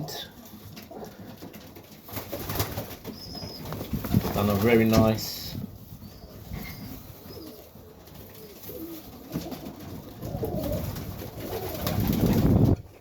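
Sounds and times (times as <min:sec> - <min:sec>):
pigeons cooing: 0:06.0 - 0:12.7.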